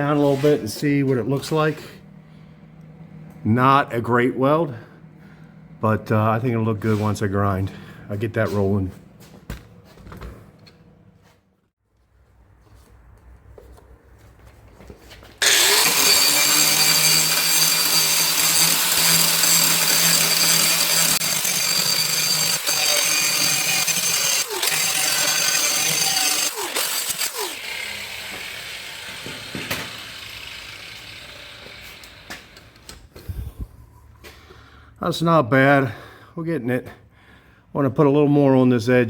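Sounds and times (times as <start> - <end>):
angle grinder grinding steel: 15.4 - 32.8.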